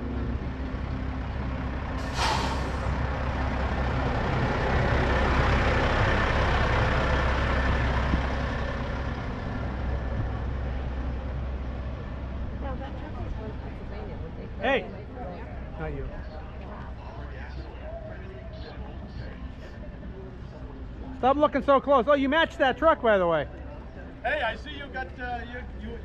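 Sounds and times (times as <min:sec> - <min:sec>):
diesel truck engine running: 0:00.0 - 0:26.0
air brake hiss: 0:02.0 - 0:03.0.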